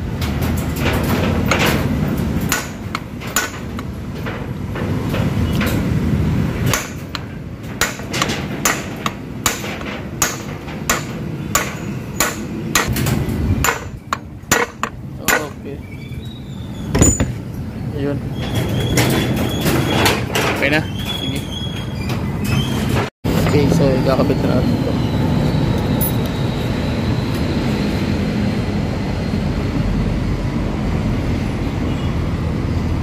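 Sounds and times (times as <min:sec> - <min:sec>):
hammer striking metal: 0:02.4 - 0:04.4, 0:06.6 - 0:15.6, 0:17.0 - 0:17.5.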